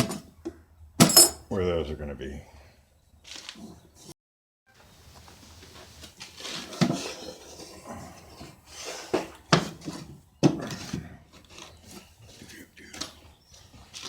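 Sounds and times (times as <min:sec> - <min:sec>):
metal hardware clinking: 0:01.0 - 0:01.4.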